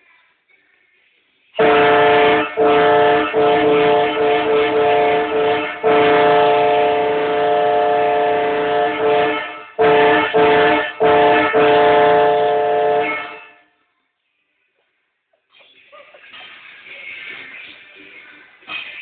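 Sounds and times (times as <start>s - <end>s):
multi-chime air train horn: 1.6s - 13.8s.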